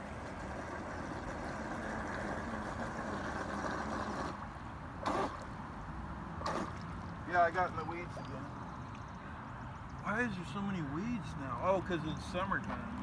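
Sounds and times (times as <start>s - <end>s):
water and spray hissing: 0.0s - 4.4s
small boat motor humming: 0.0s - 10.7s.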